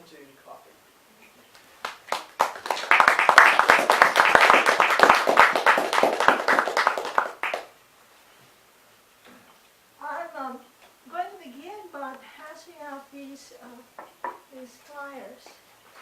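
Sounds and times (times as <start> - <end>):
audience applauding: 1.6 - 7.7.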